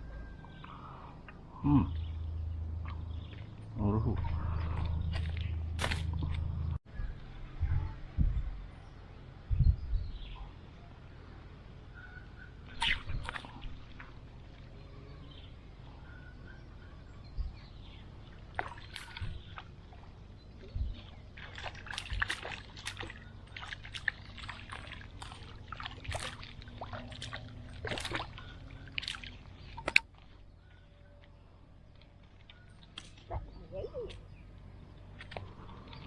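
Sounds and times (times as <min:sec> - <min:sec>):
water splashing and sloshing: 0:00.0 - 0:06.8, 0:12.6 - 0:15.8, 0:17.4 - 0:36.0
sharp loud splash: 0:21.5 - 0:28.4.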